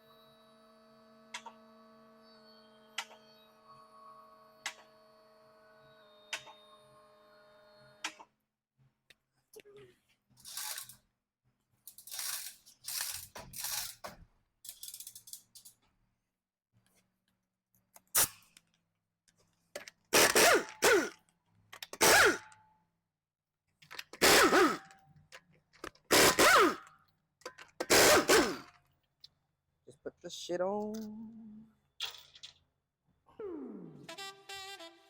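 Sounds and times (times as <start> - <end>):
power tool bursts: 10.5 - 11.0, 12.0 - 14.0, 20.1 - 21.2, 21.9 - 22.6, 24.0 - 25.0, 26.0 - 27.0, 27.7 - 28.8.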